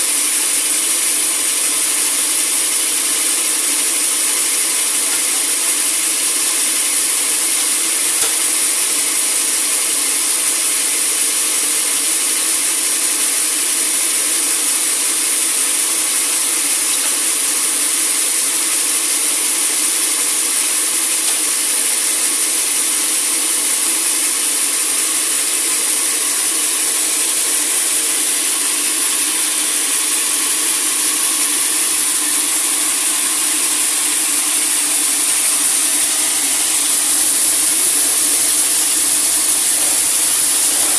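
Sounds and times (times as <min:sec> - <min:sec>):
sawmill saw cutting log: 0:00.0 - 0:40.9.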